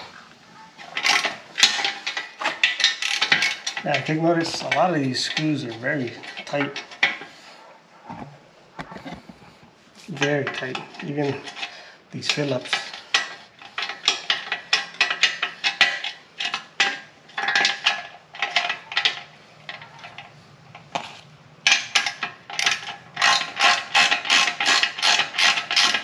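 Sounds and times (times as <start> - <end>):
hand ratchet clicking: 21.7 - 26.0.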